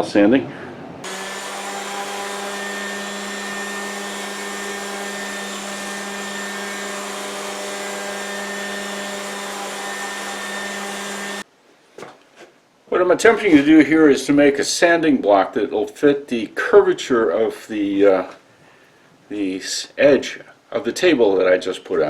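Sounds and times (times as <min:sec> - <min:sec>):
electric sander running on wood: 0:01.0 - 0:11.4.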